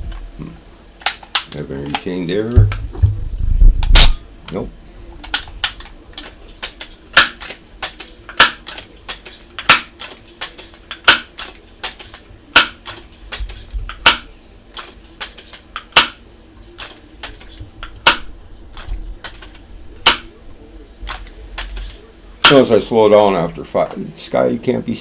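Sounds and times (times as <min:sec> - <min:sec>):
air rifle pump lever clacking: 0:21.1 - 0:22.7.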